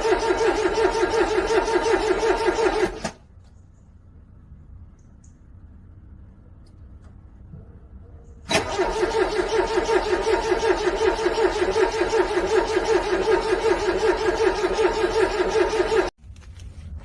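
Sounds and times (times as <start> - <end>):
starter motor cranking engine: 0.0 - 3.2, 8.5 - 16.2.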